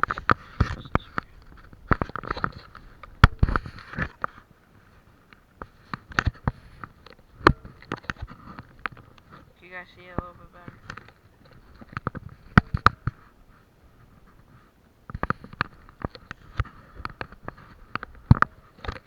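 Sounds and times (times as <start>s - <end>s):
camera handling knocks and scrapes: 0.0s - 4.4s.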